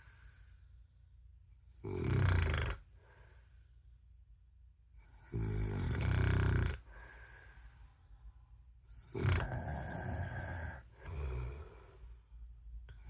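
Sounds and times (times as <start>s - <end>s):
quiet breathing: 0.0s - 13.0s
man snoring: 1.7s - 2.8s, 5.2s - 6.9s, 9.0s - 11.8s.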